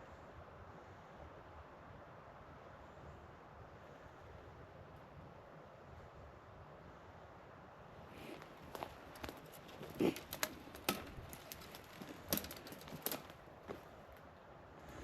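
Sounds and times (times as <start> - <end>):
footsteps on twigs and leaves: 8.1 - 14.0.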